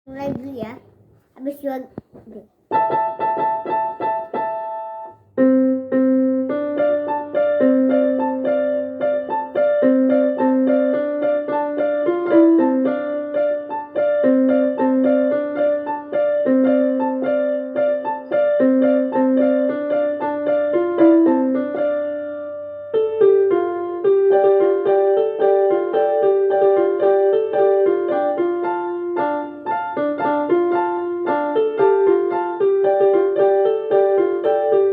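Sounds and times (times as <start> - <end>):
electronic keyboard piano tune: 2.7 - 34.9.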